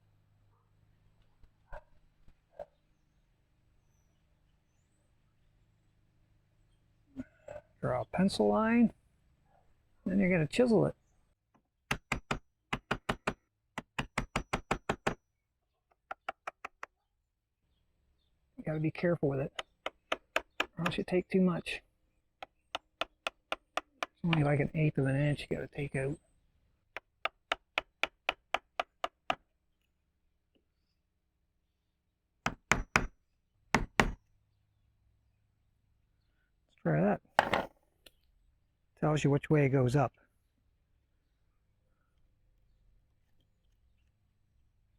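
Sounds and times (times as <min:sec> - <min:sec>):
hammer striking wood chisel: 0:11.9 - 0:15.2, 0:16.1 - 0:16.9, 0:19.5 - 0:21.0, 0:22.4 - 0:24.4, 0:27.0 - 0:29.4, 0:32.5 - 0:33.1, 0:33.8 - 0:34.2, 0:37.4 - 0:37.7.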